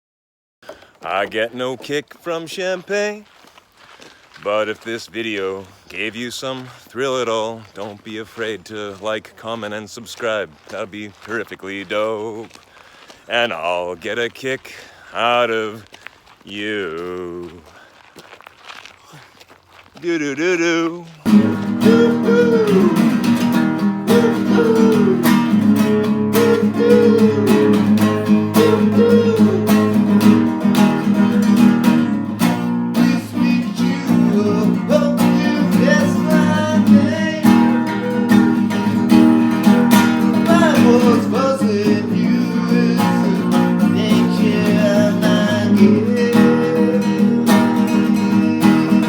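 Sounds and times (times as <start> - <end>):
acoustic guitar strumming: 20.1 - 49.0.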